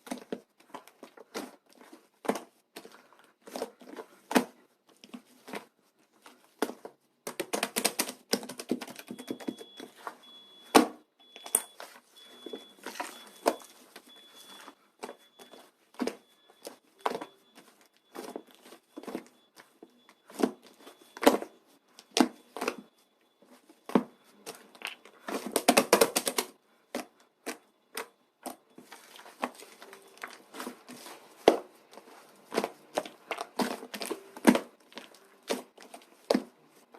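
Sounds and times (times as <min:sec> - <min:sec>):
material crinkling and clicking: 0:11.3 - 0:36.9.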